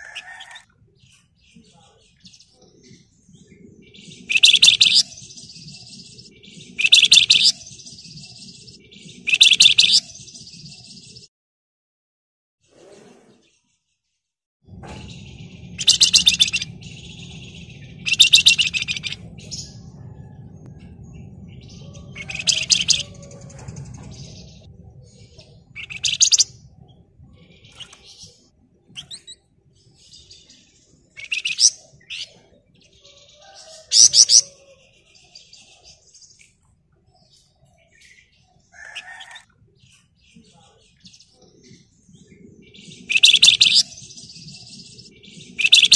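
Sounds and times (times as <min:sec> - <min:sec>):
bird trilling chatter: 0:03.9 - 0:08.3, 0:15.1 - 0:20.4, 0:21.6 - 0:24.7, 0:25.3 - 0:26.8, 0:38.7 - 0:39.5, 0:42.9 - 0:44.1
low hum: 0:14.7 - 0:31.2.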